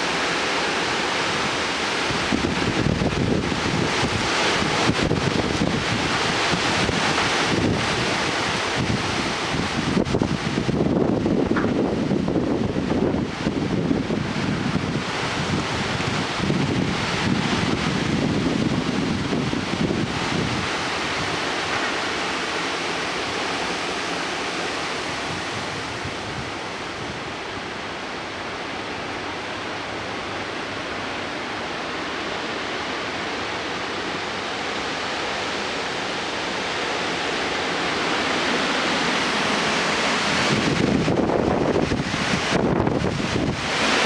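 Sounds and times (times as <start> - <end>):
wind buffeting microphone: 1.2 - 22.5, 24.8 - 27.8, 35.0 - 44.0
strong wind rushing: 1.2 - 27.7, 29.4 - 44.0.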